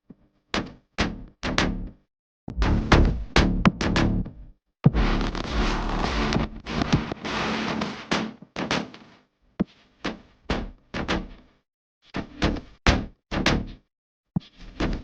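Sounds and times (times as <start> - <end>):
percussive impact thumps: 2.5 - 4.3.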